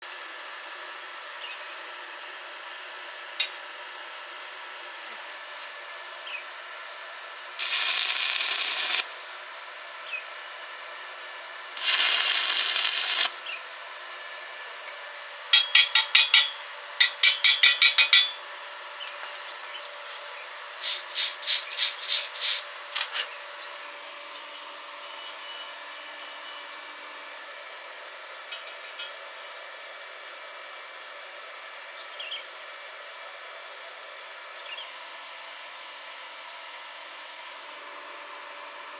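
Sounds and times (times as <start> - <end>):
sharp rasping strokes: 7.6 - 9.3, 11.8 - 13.6, 20.8 - 22.7
hissing bursts: 7.6 - 9.4, 11.8 - 13.8, 20.8 - 22.7.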